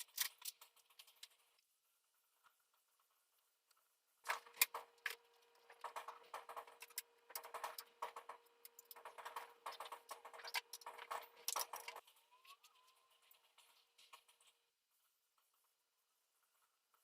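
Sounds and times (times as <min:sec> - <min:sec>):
plastic parts clicking and rattling: 0:00.0 - 0:01.6, 0:03.7 - 0:14.7.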